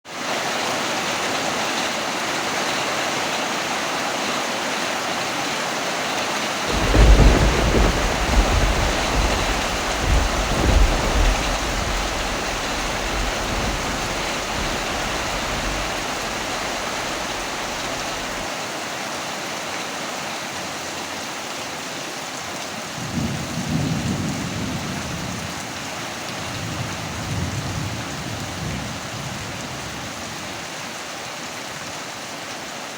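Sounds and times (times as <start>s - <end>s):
steady rain: 0.1s - 32.9s
thunder rumble: 6.7s - 18.4s.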